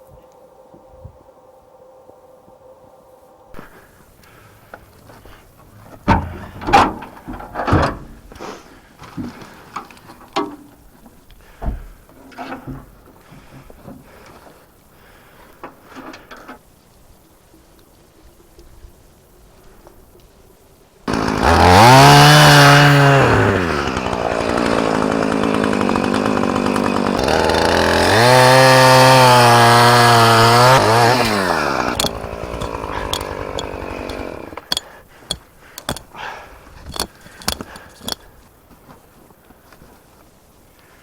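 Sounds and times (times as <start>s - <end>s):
two-stroke chainsaw revving: 21.1s - 34.9s, 35.8s - 36.0s, 36.9s - 38.2s
sharp knocks: 31.9s - 34.9s, 35.8s - 36.0s.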